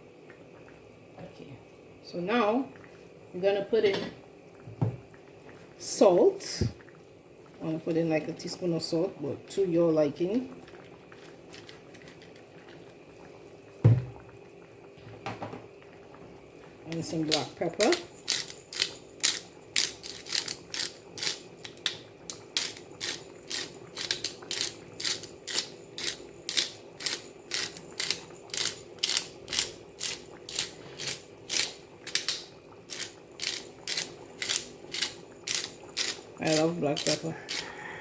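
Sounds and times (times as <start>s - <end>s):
pepper mill grinding: 11.2s - 12.5s, 16.9s - 37.8s.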